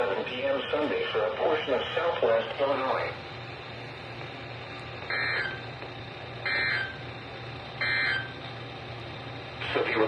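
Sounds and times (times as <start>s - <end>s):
low receiver hum: 0.0s - 10.0s
warbling digital data tones: 7.8s - 8.4s.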